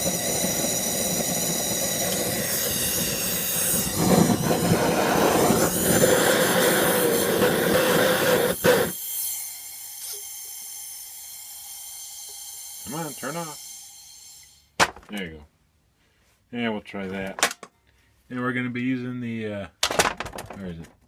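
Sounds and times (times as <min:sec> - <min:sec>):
gas torch flame hissing: 0:00.0 - 0:14.6.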